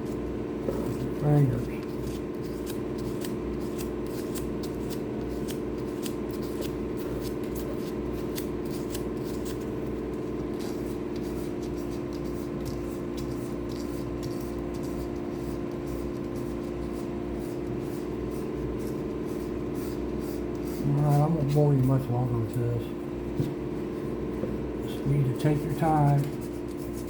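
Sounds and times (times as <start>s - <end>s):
steady hum: 0.0s - 27.0s
sandpaper scratching on epoxy: 10.6s - 22.0s.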